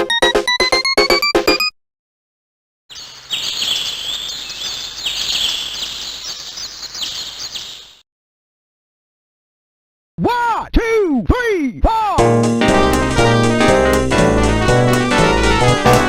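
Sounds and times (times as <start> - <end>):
birds chirping ringtone: 2.9 - 8.0.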